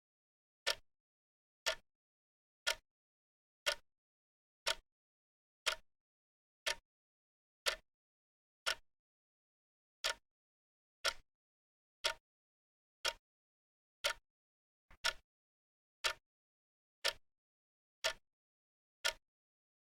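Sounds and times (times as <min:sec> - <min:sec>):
clock ticking: 0:07.6 - 0:07.8, 0:11.0 - 0:11.2, 0:15.0 - 0:15.2.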